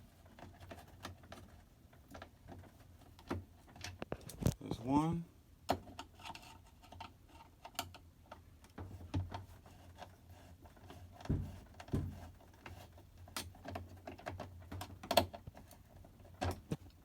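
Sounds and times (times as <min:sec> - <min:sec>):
dull knocks: 0:11.2 - 0:12.4.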